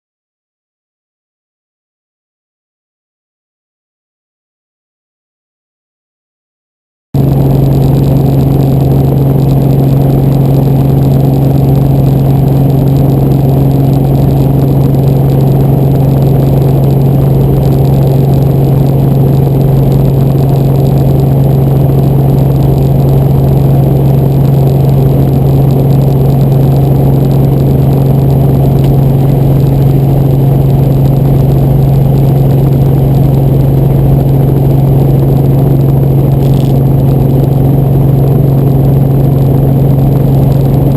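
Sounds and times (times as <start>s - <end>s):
helicopter drone: 7.2s - 40.9s.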